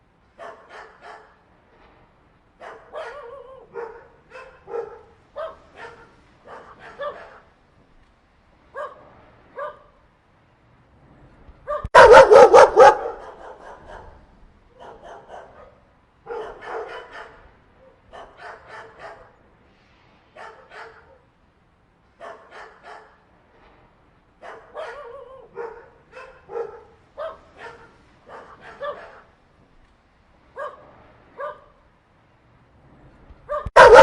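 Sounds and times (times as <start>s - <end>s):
dogs barking: 0.4s - 1.4s, 2.6s - 7.5s, 8.7s - 9.9s, 11.7s - 19.4s, 20.4s - 21.2s, 22.2s - 23.2s, 24.4s - 29.4s, 30.6s - 31.8s, 33.5s - 34.0s.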